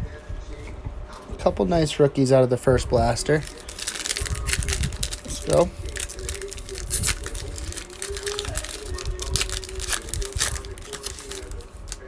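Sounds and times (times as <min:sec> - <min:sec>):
plastic wrapping crackling: 0:03.0 - 0:12.0.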